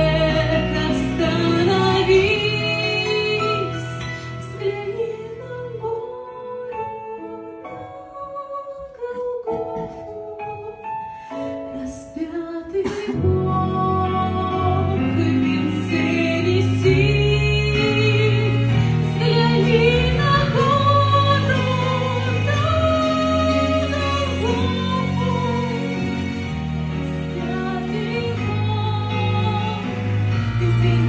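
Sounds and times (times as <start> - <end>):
woman singing: 0.0 - 26.2, 27.1 - 31.0.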